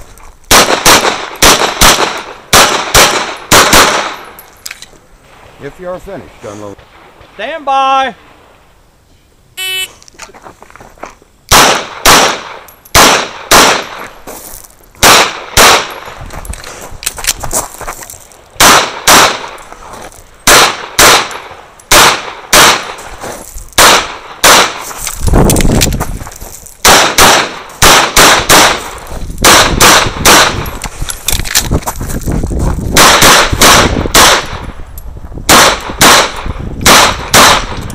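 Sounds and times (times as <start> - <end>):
pistol shots: 0.5 - 4.4, 11.5 - 14.0, 15.0 - 16.0, 18.6 - 19.6, 20.4 - 23.0, 23.8 - 24.8, 26.8 - 30.8, 33.0 - 34.7, 35.5 - 37.8.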